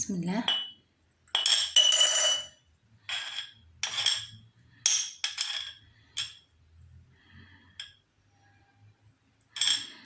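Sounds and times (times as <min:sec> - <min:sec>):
utensil clinking on a dish: 0:00.4 - 0:06.5, 0:09.5 - 0:10.0.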